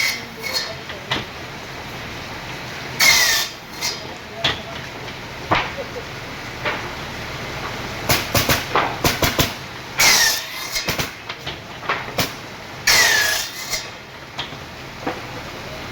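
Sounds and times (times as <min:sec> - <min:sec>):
harsh whining scraping screeches: 0:03.0 - 0:04.1, 0:10.0 - 0:10.9, 0:12.8 - 0:13.9.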